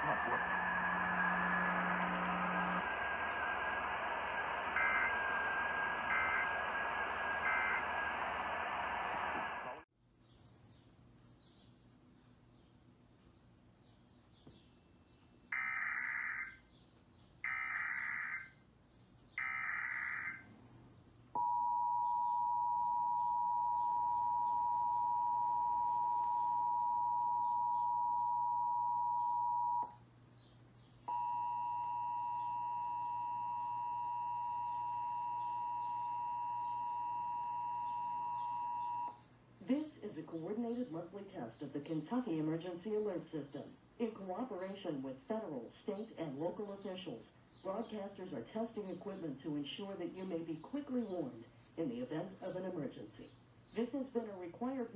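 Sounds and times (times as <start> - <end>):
long steady alert tone: 0.0 - 9.8, 21.4 - 29.9, 31.1 - 39.2
warbling digital data tones: 0.0 - 9.8
two-tone attention beep: 21.4 - 29.9, 31.1 - 39.1.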